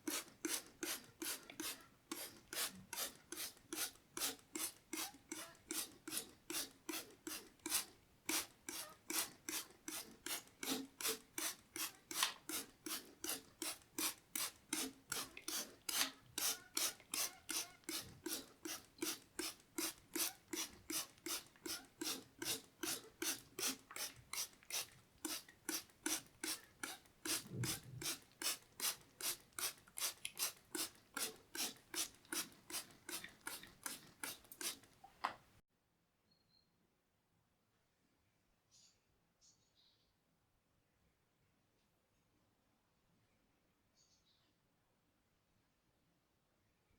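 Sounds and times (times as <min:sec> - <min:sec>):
rhythmic rasping strokes: 0:00.0 - 0:35.0.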